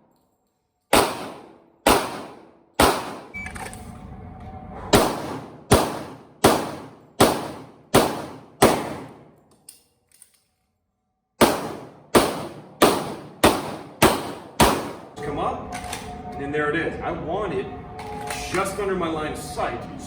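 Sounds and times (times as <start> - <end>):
pistol shots with ringing echo: 0.9 - 3.4, 4.9 - 9.4, 11.4 - 15.2.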